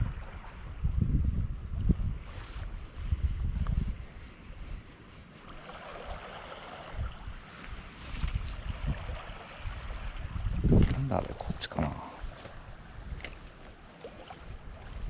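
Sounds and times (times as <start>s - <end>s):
wind buffeting microphone: 0.0s - 15.0s
sea water washing: 4.0s - 15.0s.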